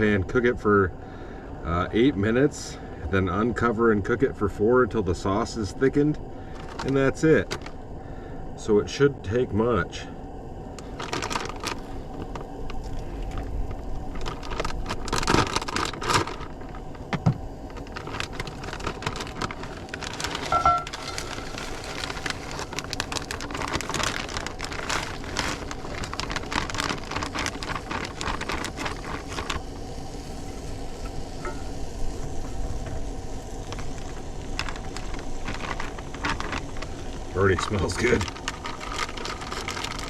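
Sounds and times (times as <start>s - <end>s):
food sizzling in a pan: 20.3s - 23.2s, 29.6s - 35.5s.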